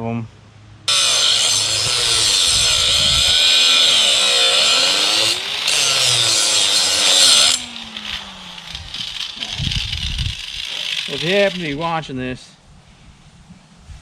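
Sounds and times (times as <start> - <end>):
angle grinder grinding metal: 0.9 - 11.9.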